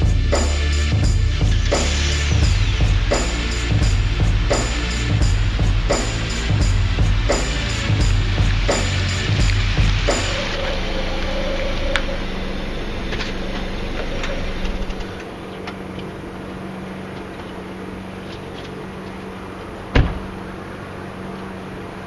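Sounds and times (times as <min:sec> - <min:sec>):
car engine humming: 0:00.0 - 0:22.0
sharp thump: 0:19.9 - 0:20.3.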